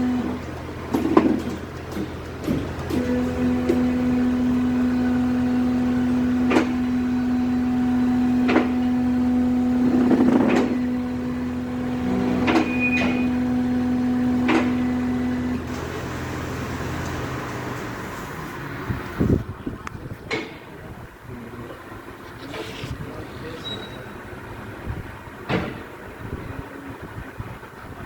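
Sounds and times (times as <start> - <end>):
machine motor humming: 0.0 - 19.4.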